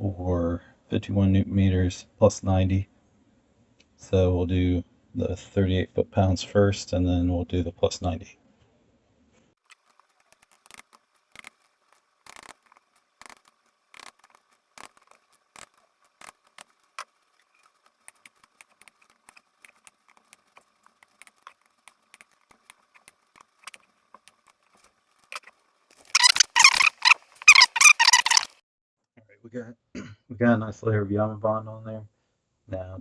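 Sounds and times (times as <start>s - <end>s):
hand tools clicking and rattling: 9.6s - 28.6s.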